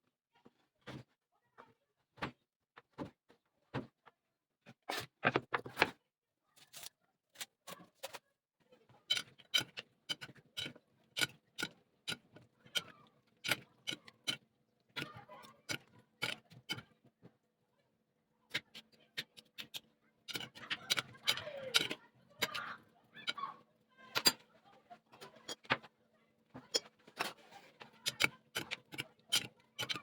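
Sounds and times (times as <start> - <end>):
kitchen utensils clicking and knocking: 9.1 - 16.9, 18.5 - 24.5, 25.2 - 25.9, 26.6 - 30.0.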